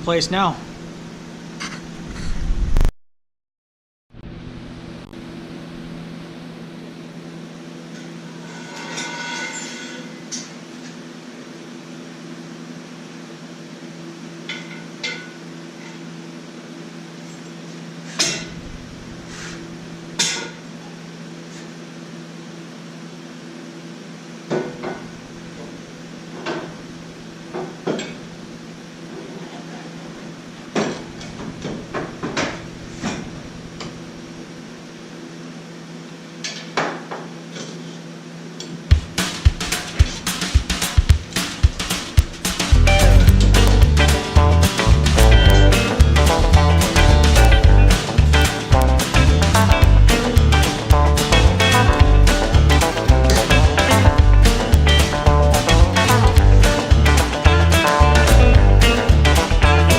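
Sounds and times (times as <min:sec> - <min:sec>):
steady low hum: 0:10.6 - 0:29.2, 0:38.9 - 0:59.9.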